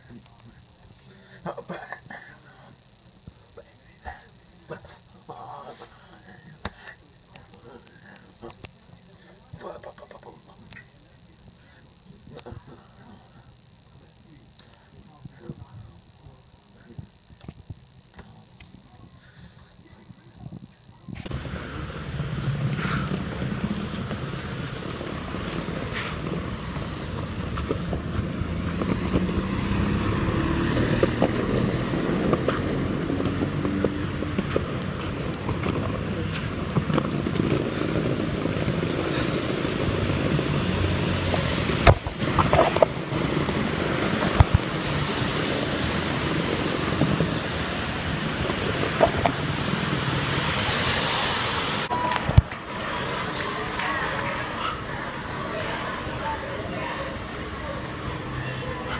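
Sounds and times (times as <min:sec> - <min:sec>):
heavy rain: 0:38.6 - 0:53.1.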